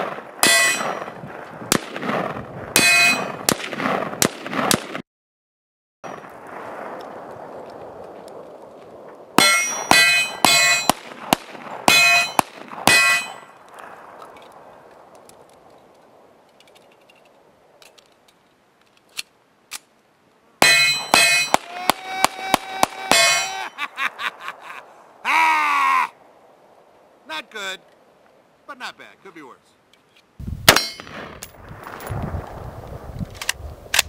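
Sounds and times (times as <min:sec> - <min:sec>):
gunshots: 0:00.0 - 0:05.0, 0:09.4 - 0:13.4, 0:20.6 - 0:23.6, 0:30.7 - 0:32.1
steel target clanging: 0:00.4 - 0:01.1, 0:02.8 - 0:03.4, 0:09.4 - 0:11.0, 0:11.9 - 0:13.5, 0:20.6 - 0:21.7, 0:23.1 - 0:23.6, 0:30.7 - 0:31.5.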